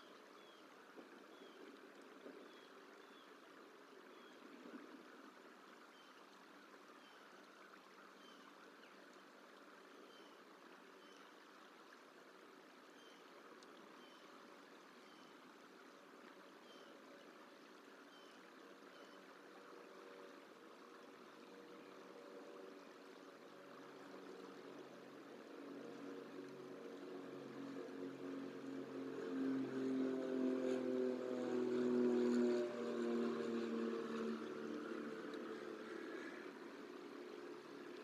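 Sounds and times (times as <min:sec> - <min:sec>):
faint running water: 0:00.0 - 0:29.9, 0:32.8 - 0:38.0.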